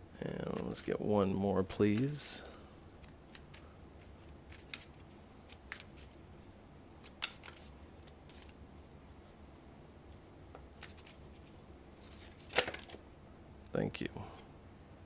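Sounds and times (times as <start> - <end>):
cards being shuffled: 0.2 - 1.1, 1.8 - 2.2, 3.0 - 9.4, 10.4 - 13.0.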